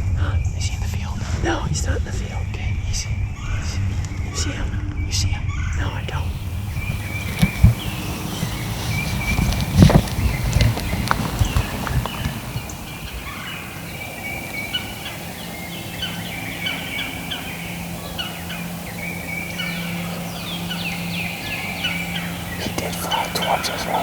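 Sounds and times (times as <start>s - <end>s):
steady low hum: 0.0s - 24.0s
turkeys gobbling: 5.5s - 24.0s.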